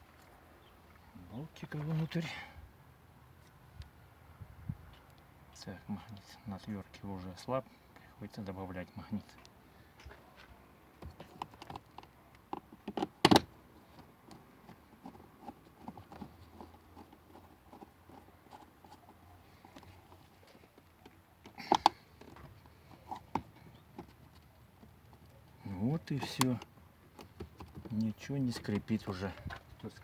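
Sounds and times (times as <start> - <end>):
plastic door trim clicks: 12.9 - 13.5.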